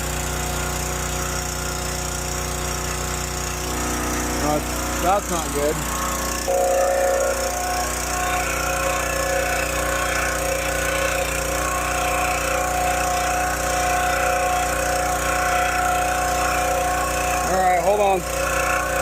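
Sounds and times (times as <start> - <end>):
drain jetter motor and pump running: 0.0 - 19.0.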